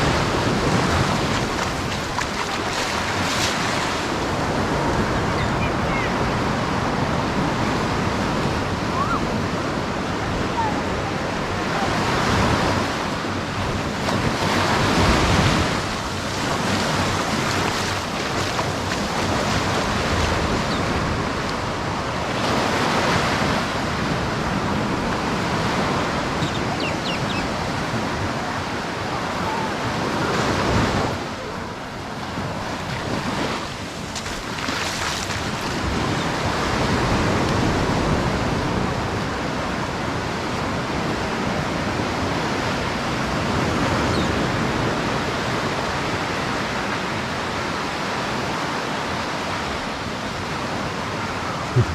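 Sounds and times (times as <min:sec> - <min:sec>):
ocean surf breaking on beach: 0:00.0 - 0:51.9.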